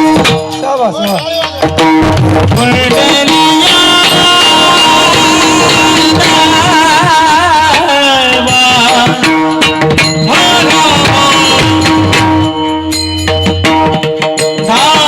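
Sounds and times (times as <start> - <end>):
drum strokes: 0.0 - 15.0
sustained accompaniment: 0.0 - 15.0
person singing ornamented notes: 2.6 - 13.1.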